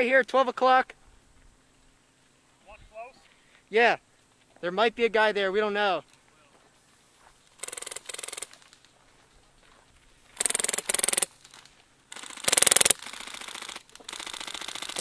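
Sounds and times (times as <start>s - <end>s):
airsoft guns firing bursts: 7.6s - 8.7s, 10.4s - 15.0s.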